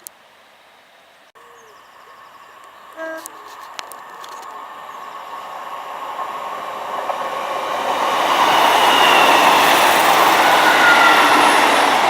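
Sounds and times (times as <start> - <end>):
diesel train approaching: 0.2 - 12.0
wheel-on-rail noise: 1.9 - 12.0
faint high wheel squeal: 2.9 - 4.5, 8.4 - 11.4.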